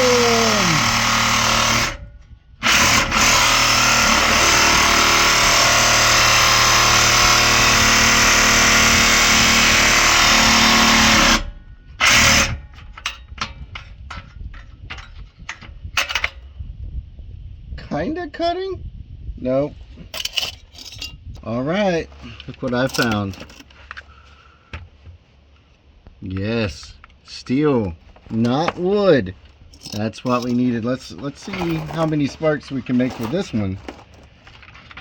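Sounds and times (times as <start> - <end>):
power cutting tool on steel pipe: 0.0 - 2.0, 2.6 - 12.6.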